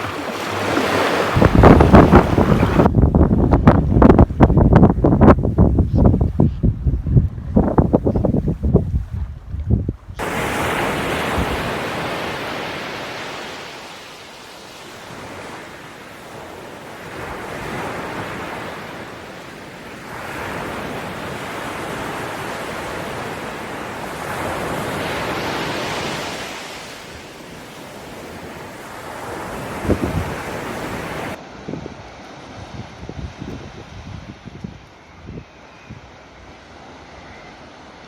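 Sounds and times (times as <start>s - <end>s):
ocean waves breaking on beach: 0.0s - 3.0s, 10.2s - 35.1s, 36.1s - 38.0s.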